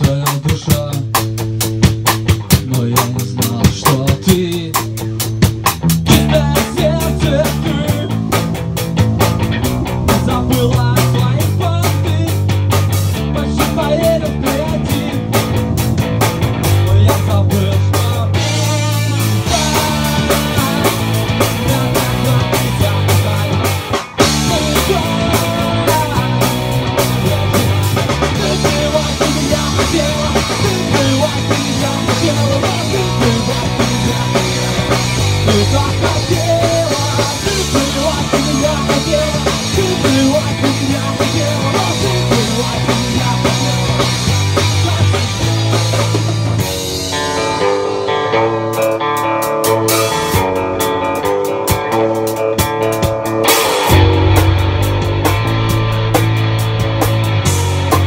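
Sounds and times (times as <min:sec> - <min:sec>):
instrumental rock music: 0:00.0 - 0:58.0.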